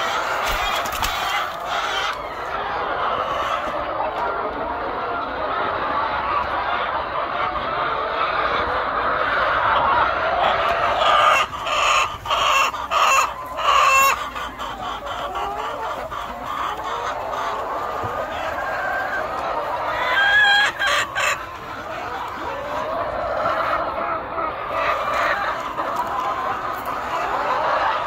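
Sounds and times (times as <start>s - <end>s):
hens clucking: 0.0s - 28.0s
sharp hen calls: 9.6s - 28.0s.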